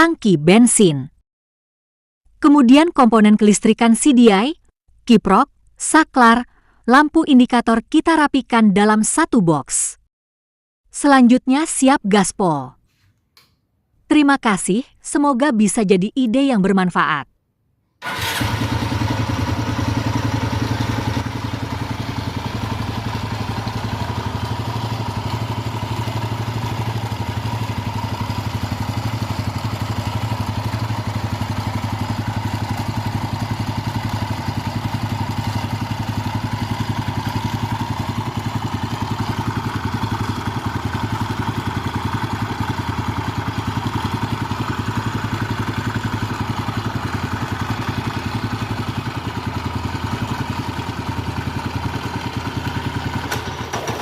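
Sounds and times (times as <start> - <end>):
scooter engine running steadily: 18.0 - 54.0.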